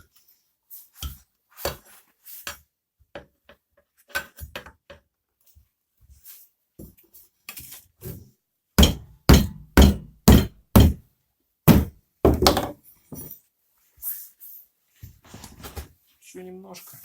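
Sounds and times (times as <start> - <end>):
hammer striking wheel rim: 8.8 - 11.0.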